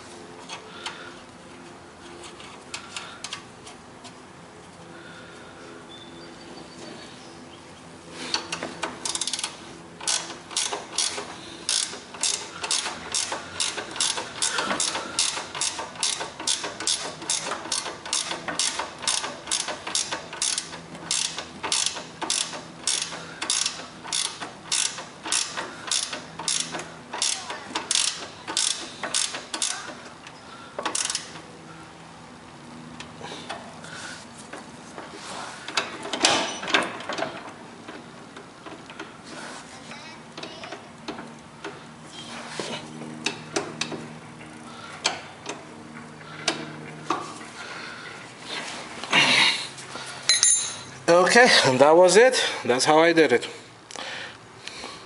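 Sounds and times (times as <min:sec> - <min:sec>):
socket ratchet clicking: 0:08.4 - 0:29.8.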